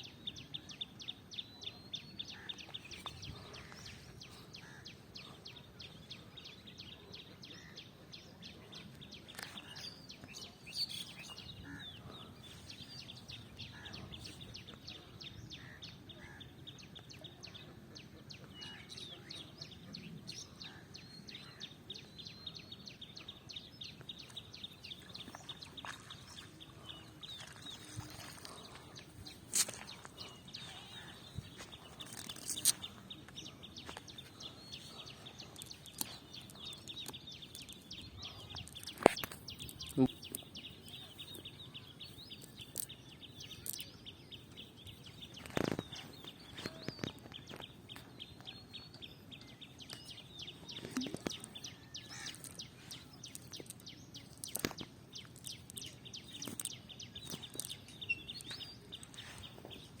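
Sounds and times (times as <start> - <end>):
birds calling: 0.0 - 60.0
small clicks: 52.2 - 57.8.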